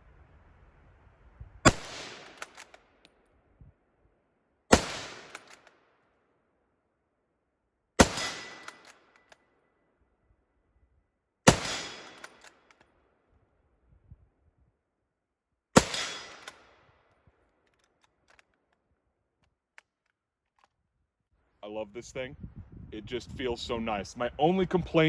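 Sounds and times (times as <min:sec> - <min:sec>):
rifle shots with echo: 0:01.6 - 0:02.9, 0:04.7 - 0:05.9, 0:08.0 - 0:09.4, 0:11.4 - 0:12.8, 0:15.8 - 0:16.9
rifle bolt clicks: 0:02.2 - 0:03.2, 0:05.1 - 0:05.8, 0:08.1 - 0:09.4, 0:11.5 - 0:12.9, 0:15.8 - 0:16.7, 0:17.6 - 0:18.8, 0:19.4 - 0:20.8.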